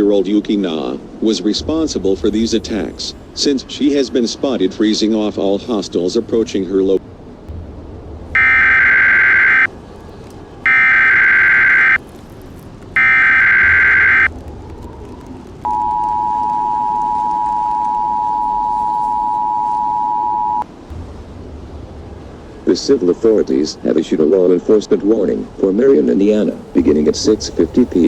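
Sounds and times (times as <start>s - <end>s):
harsh digital screech bursts: 8.4s - 9.7s, 13.0s - 14.3s
two-tone attention signal: 8.4s - 9.7s, 10.7s - 12.0s, 13.0s - 14.3s, 15.7s - 20.6s.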